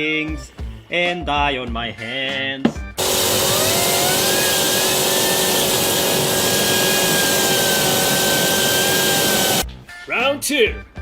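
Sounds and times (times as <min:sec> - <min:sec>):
jet engine roaring with whine: 0:03.0 - 0:09.6.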